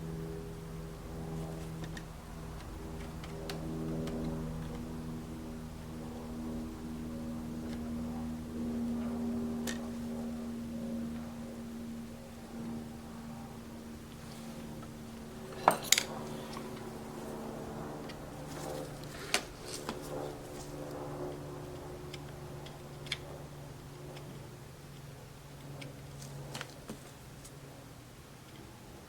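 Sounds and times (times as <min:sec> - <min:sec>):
faint electrical hum: 0:00.0 - 0:29.0
small metal tools clinking: 0:15.5 - 0:16.1.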